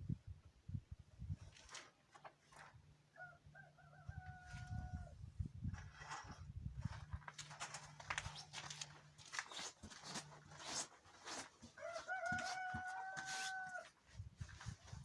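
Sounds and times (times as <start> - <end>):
rooster crowing: 3.2 - 5.1, 11.8 - 14.0
clicks and rustles: 5.7 - 15.0.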